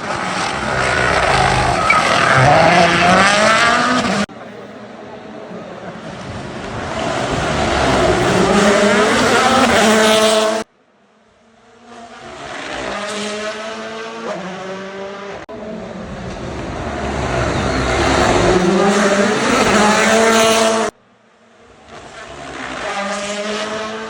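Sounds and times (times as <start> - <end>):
rally car engines at full throttle: 0.0 - 24.0.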